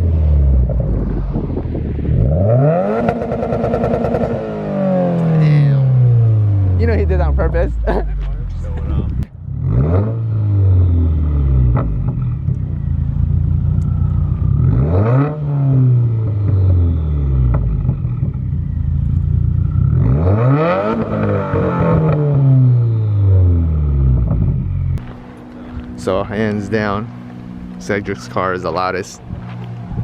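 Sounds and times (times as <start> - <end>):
car engine revving: 0.0 - 30.0
exhaust pops: 11.6 - 14.8, 16.4 - 19.9, 24.1 - 30.0.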